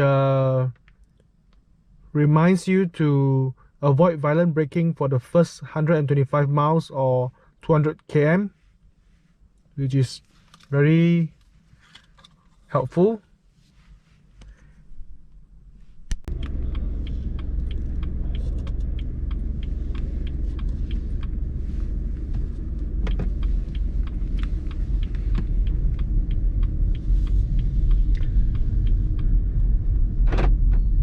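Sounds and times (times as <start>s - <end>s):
car engine and road noise: 11.4s - 31.0s.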